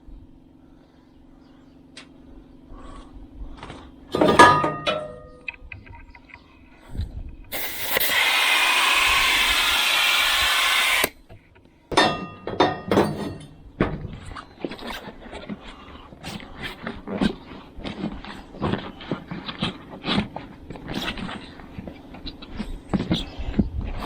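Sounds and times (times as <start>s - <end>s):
metallic clanks with ringing: 4.1s - 5.5s, 11.9s - 14.0s
compressed air hissing into tire: 7.5s - 11.2s
clattering knocks: 11.9s - 14.2s.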